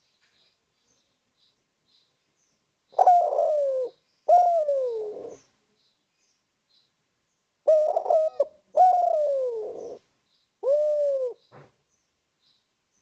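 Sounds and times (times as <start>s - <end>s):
dove cooing: 3.0s - 5.5s, 7.6s - 10.0s, 10.6s - 11.4s.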